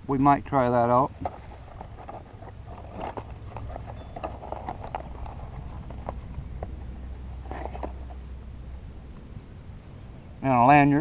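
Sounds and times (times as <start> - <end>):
steady low rumble: 0.0 - 11.0
plastic bags rustling: 1.0 - 8.2.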